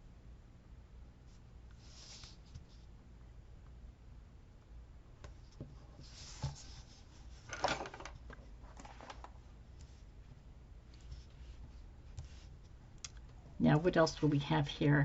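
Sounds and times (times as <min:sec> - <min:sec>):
faint steady hum: 0:00.0 - 0:15.0
paper rustling: 0:06.0 - 0:10.0.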